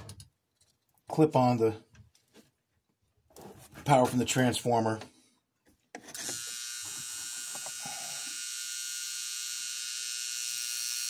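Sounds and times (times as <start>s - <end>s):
toy train motor whirring: 6.0s - 11.0s.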